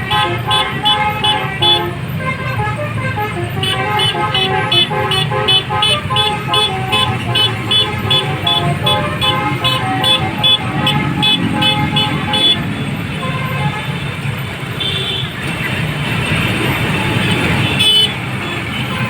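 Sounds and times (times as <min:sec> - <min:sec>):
engine running: 0:00.0 - 0:14.7
multi-tone bus horn tune: 0:00.0 - 0:15.5, 0:16.7 - 0:19.0
traffic rumble: 0:00.0 - 0:19.0.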